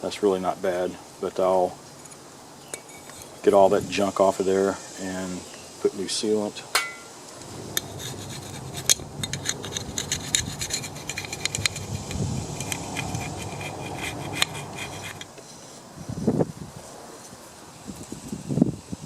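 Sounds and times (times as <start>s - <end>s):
scraping on metal: 7.4s - 15.8s.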